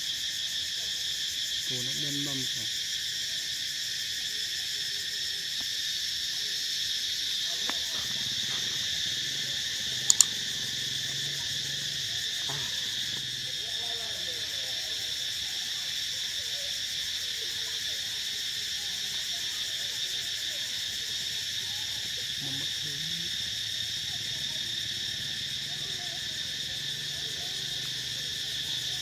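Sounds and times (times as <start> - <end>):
insects buzzing: 0.0 - 29.0
sharp clicks: 10.1 - 10.4.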